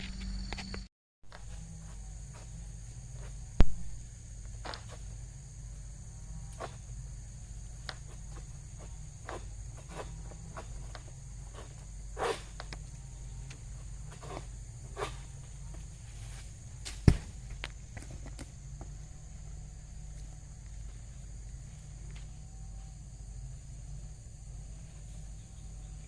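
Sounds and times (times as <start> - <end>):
high-pitched insect drone: 0.0 - 26.0.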